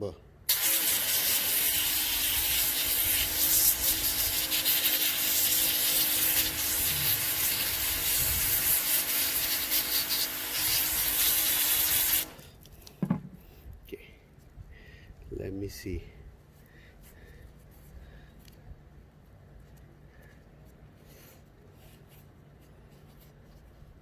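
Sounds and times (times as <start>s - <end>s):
pressure washer spraying water: 0.5s - 12.4s.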